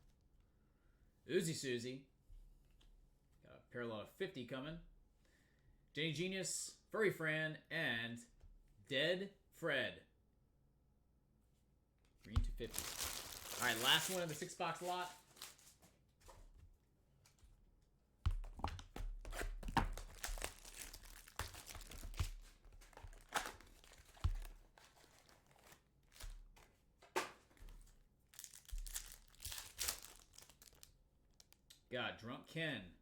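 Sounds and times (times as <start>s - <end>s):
wrapper tearing and crinkling: 12.6s - 15.9s, 19.8s - 26.4s, 28.3s - 31.6s.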